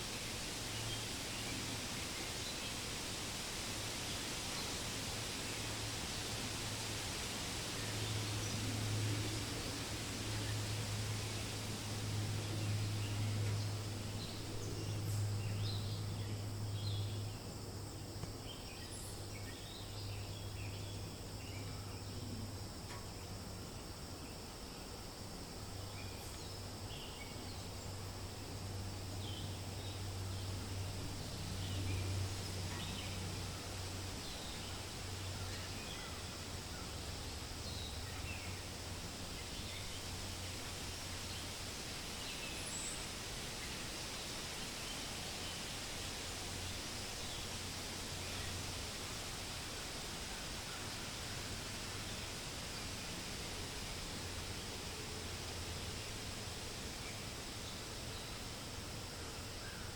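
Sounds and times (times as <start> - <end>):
faint high insect drone: 0.0 - 59.9
wind in leaves: 0.0 - 59.9.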